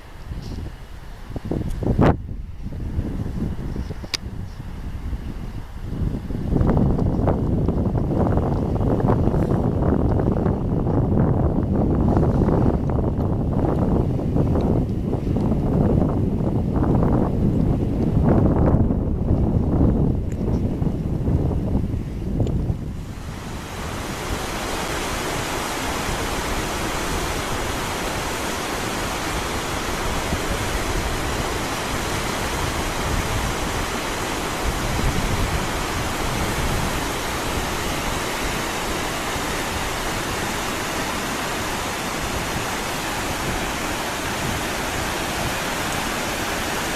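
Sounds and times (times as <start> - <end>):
waterfall roaring: 22.7 - 46.9.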